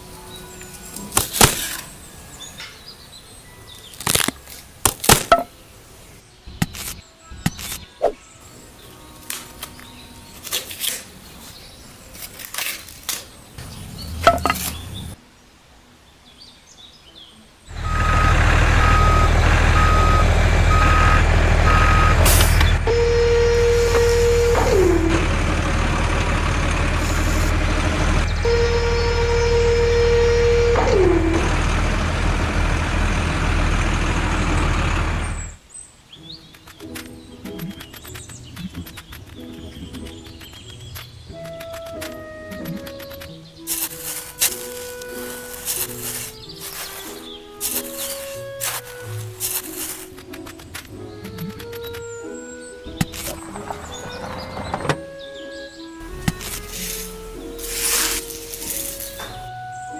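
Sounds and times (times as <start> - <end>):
vehicle engine rumble: 8.5 - 15.2, 17.7 - 35.6, 43.7 - 50.1, 52.8 - 59.9
long pitch-dropping tones: 17.7 - 35.6
reversing beeps: 17.8 - 23.0.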